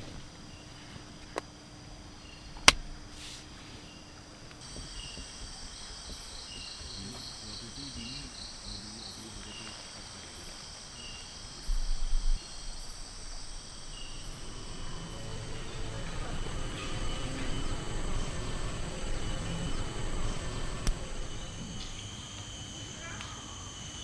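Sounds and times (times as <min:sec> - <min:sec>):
insects calling: 0:00.0 - 0:24.0
sharp click: 0:02.6 - 0:02.9.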